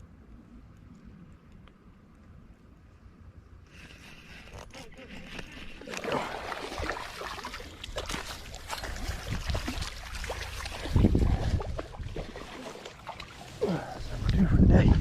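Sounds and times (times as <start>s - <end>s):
creek water splashing: 3.9s - 14.4s.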